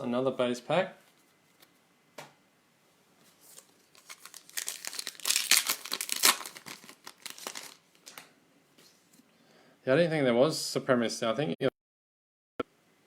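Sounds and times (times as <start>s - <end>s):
card pack wrapper crinkling and tearing: 3.4s - 8.3s.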